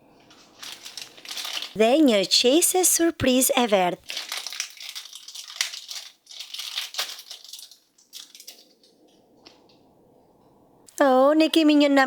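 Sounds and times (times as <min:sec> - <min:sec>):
plastic bag crinkling and tearing: 0:00.3 - 0:08.9.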